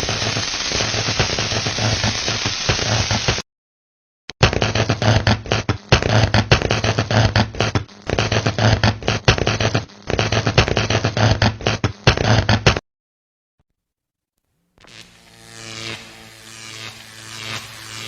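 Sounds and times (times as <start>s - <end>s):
electric arcing crackle: 0.0s - 3.4s, 14.8s - 18.0s.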